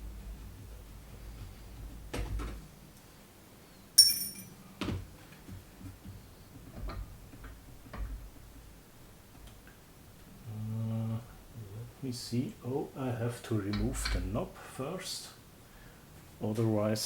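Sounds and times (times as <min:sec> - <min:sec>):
ringing metallic clink: 0:04.0 - 0:04.5.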